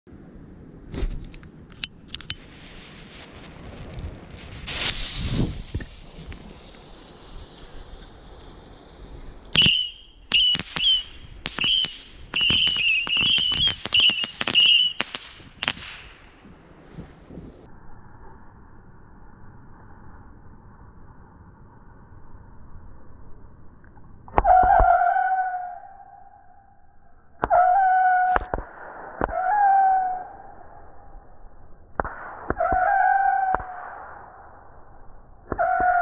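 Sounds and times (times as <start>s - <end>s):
fireworks whistles and cracks: 2.2s - 17.6s, 27.4s - 30.8s, 31.9s - 34.5s, 35.4s - 36.0s
fireworks fuse hiss: 2.4s - 17.4s.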